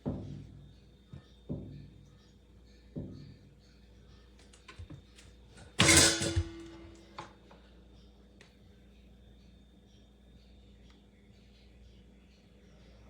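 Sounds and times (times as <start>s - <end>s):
objects knocking and clicking: 5.6s - 7.3s.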